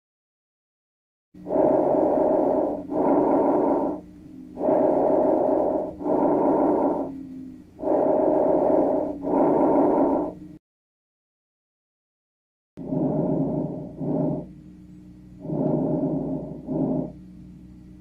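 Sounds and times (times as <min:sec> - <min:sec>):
breathing through stethoscope: 0:01.4 - 0:10.4, 0:15.4 - 0:17.2
faint steady hum: 0:01.4 - 0:10.6, 0:12.8 - 0:18.0.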